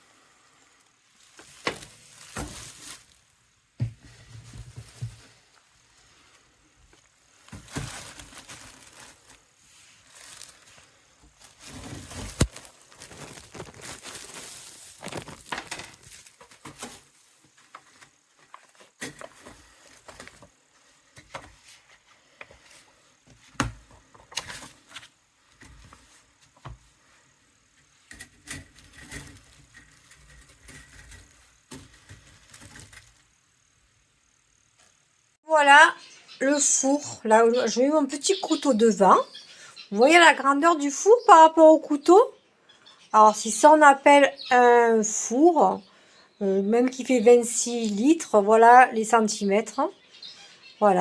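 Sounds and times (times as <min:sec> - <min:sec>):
rustling: 0:00.0 - 0:33.4
handling knocks and clatter: 0:03.8 - 0:05.4.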